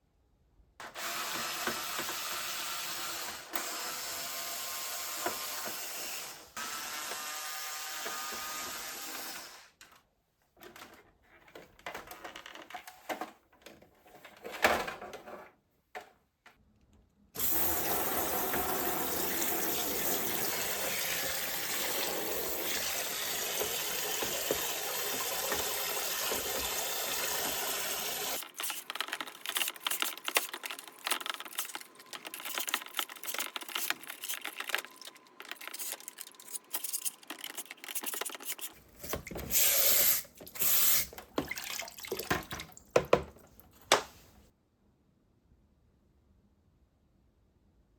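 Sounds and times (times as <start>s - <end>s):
water running from a tap: 17.4s - 28.4s, 39.2s - 43.0s
water splashing: 40.2s - 42.9s.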